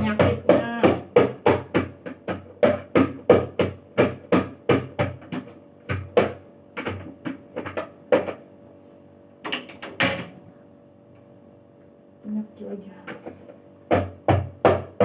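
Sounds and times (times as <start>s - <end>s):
ingredients being pounded: 0.0s - 8.4s, 13.1s - 15.0s.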